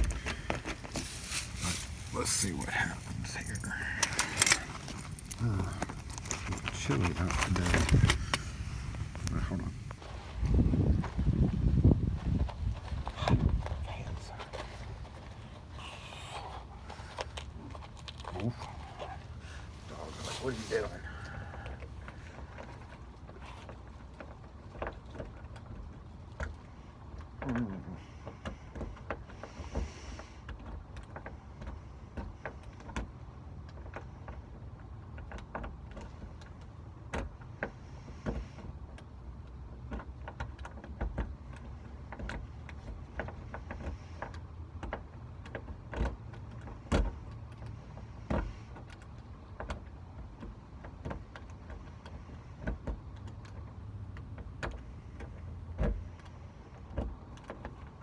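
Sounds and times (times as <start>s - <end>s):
steady low rumble: 0.0s - 22.4s
metallic clicks of lock tools: 2.3s - 7.0s.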